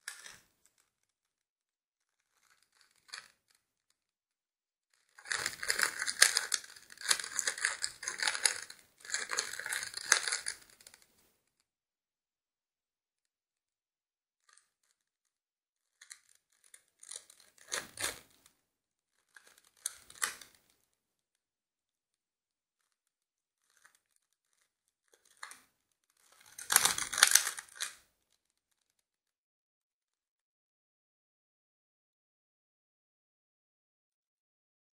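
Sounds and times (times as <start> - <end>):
puzzle cube twisting clicks: 5.2 - 11.0, 19.5 - 20.6, 26.3 - 28.0.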